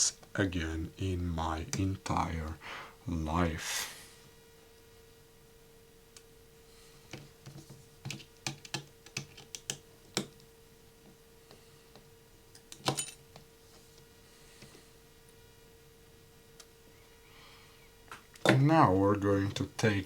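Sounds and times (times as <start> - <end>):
faint steady hum: 0.0 - 20.0
small tools clicking on phone parts: 8.0 - 10.3.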